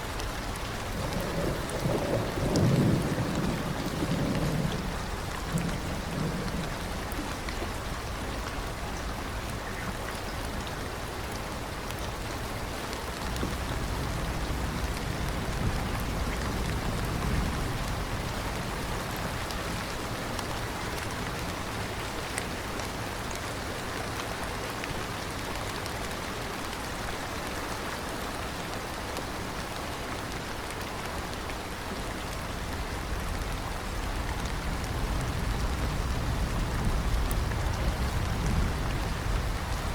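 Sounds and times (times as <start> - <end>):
steady rain falling: 0.0 - 39.9
thunder rumbling: 0.2 - 9.3, 13.0 - 20.2, 32.5 - 39.9.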